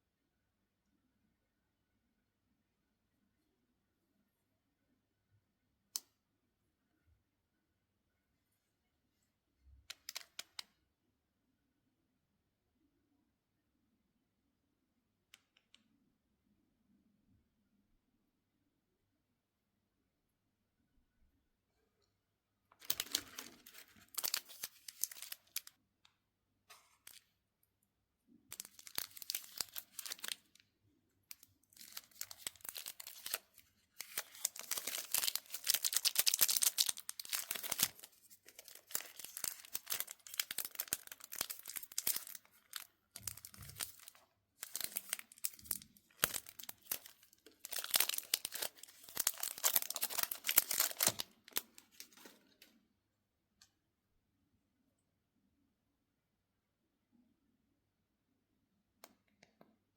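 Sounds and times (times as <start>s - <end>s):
plastic wrappers crinkling and tearing: 22.8s - 25.7s, 28.5s - 30.6s, 31.3s - 52.5s.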